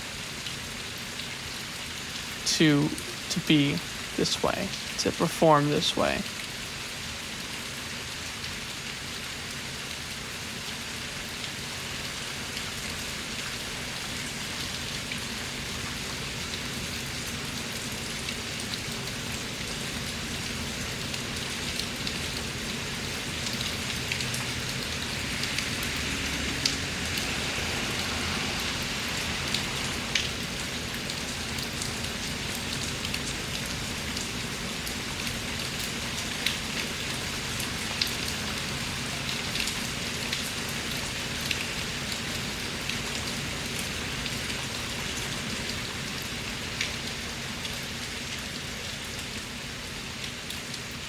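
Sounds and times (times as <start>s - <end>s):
heavy rain hiss: 2.1s - 6.3s, 22.5s - 35.2s.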